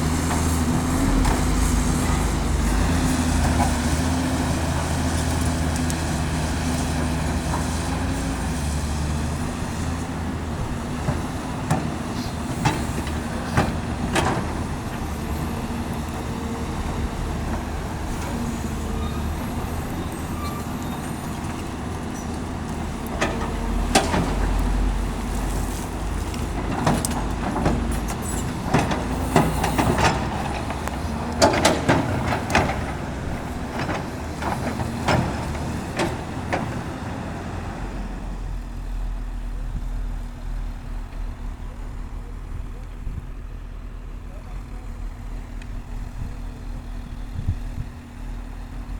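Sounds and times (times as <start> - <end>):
excavator diesel engine running: 0.0 - 48.9
excavator bucket clanking: 10.9 - 37.5.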